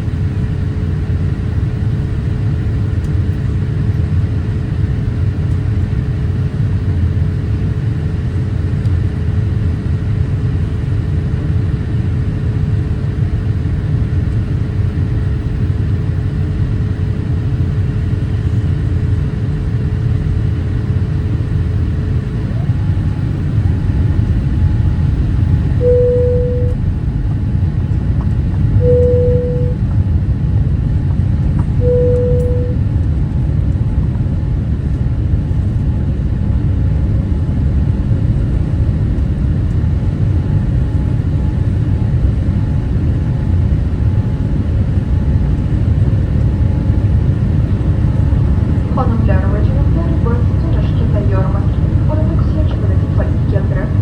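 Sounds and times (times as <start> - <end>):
airliner cabin rumble: 12.9 - 54.0
faint steady hum: 20.0 - 33.2, 44.5 - 54.0
short beeps: 25.8 - 26.8, 28.8 - 29.8, 31.8 - 32.8.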